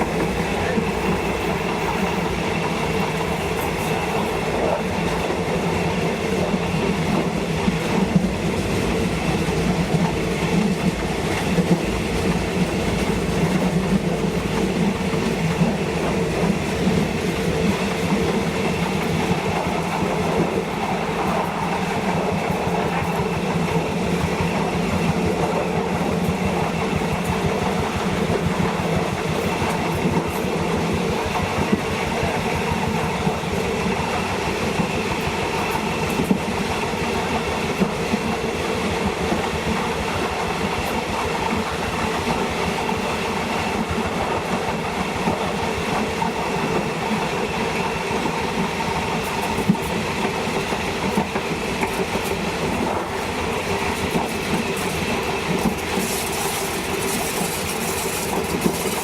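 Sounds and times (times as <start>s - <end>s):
diesel train rumbling: 0.0s - 59.0s
wheels clicking over rail joints: 39.1s - 59.0s.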